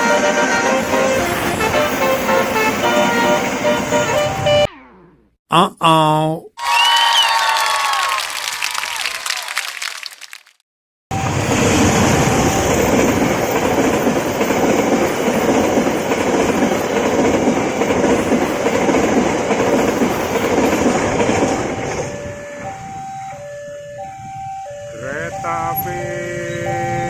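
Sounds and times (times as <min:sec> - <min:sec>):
train wheels rumbling on rails: 0:00.0 - 0:04.5, 0:11.1 - 0:23.6
alternating two-note warning tone: 0:22.1 - 0:27.0.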